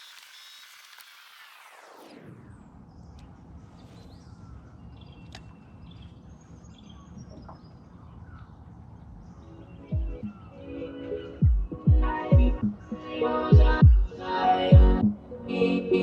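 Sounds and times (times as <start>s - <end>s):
small birds chirping: 2.5s - 14.2s.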